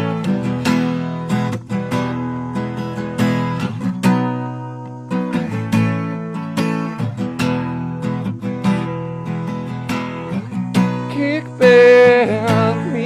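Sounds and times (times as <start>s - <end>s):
strummed acoustic guitar: 0.0s - 13.0s
person singing: 11.0s - 13.0s.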